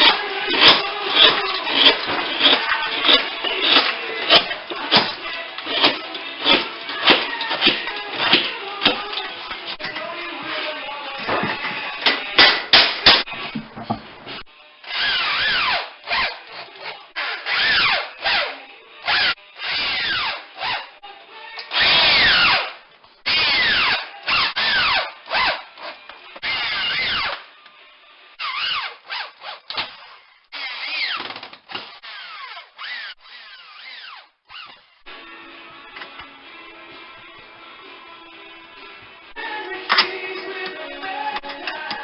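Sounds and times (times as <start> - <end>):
power drill driving screws: 21.7 - 27.4, 28.4 - 34.9.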